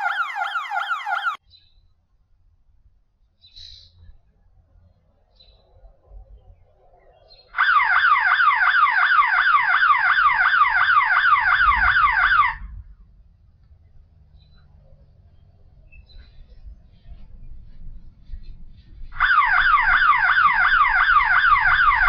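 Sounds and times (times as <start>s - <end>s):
siren alarm pitch sweeps: 0.0s - 1.4s, 7.6s - 12.6s, 19.2s - 22.0s.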